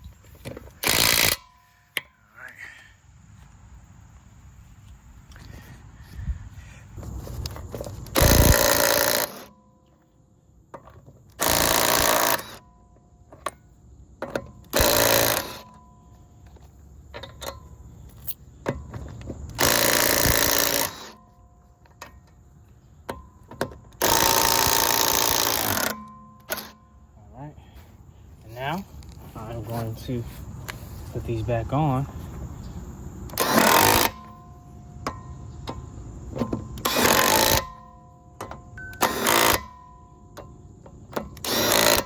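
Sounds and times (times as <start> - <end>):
impact wrench hammering lug nuts: 0.4 - 2.1, 8.0 - 9.6, 10.7 - 13.6, 14.2 - 16.0, 17.1 - 22.3, 23.0 - 26.8, 33.3 - 42.0.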